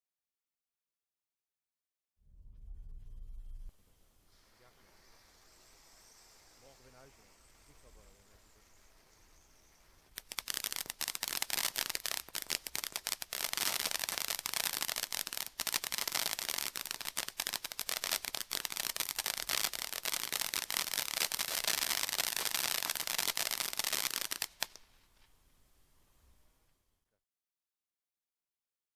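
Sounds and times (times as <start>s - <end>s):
faint hiss: 2.6s - 27.2s
firework crackling and popping: 4.2s - 25.3s.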